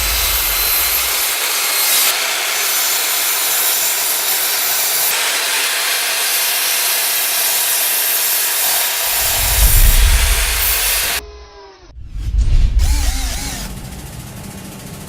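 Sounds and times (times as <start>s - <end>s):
saw cutting through wood: 0.0s - 11.3s, 12.8s - 14.2s.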